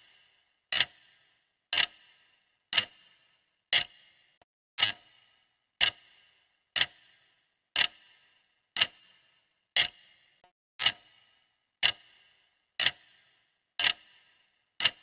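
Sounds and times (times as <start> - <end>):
clock ticking: 0.7 - 1.2, 1.8 - 3.1, 3.7 - 4.2, 4.8 - 5.2, 5.8 - 6.2, 6.8 - 7.2, 7.8 - 8.2, 8.8 - 9.1, 9.8 - 10.1, 10.8 - 11.2, 11.8 - 12.2, 12.8 - 13.2, 13.8 - 14.2, 14.8 - 15.0.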